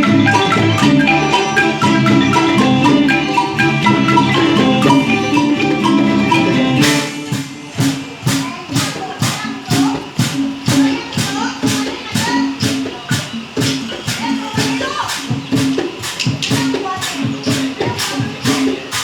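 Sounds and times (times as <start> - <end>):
xylophone quick melody: 0.0 - 8.4
sharp percussion strokes: 0.0 - 19.0.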